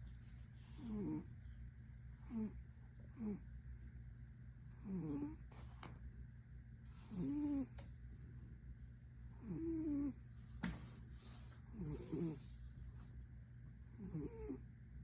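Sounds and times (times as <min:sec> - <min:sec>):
cat snoring: 0:00.7 - 0:01.3, 0:02.2 - 0:03.4, 0:04.7 - 0:05.5, 0:06.9 - 0:07.8, 0:09.3 - 0:10.2, 0:11.6 - 0:12.5, 0:13.9 - 0:14.6.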